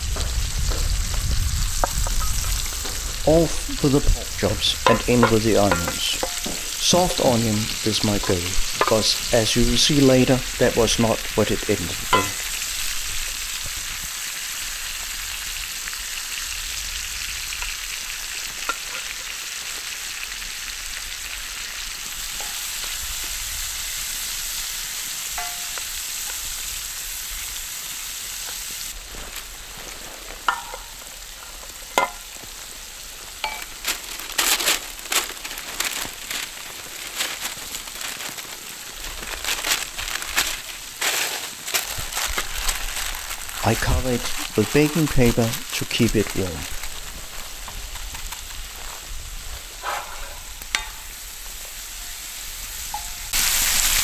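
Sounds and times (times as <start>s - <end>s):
onions sizzling in a pan: 0.0s - 54.0s.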